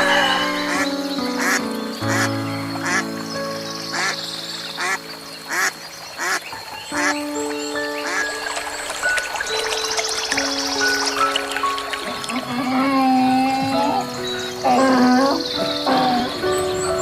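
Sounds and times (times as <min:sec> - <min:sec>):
background music with held notes: 0:00.0 - 0:17.0
farm animal calling: 0:12.0 - 0:16.6.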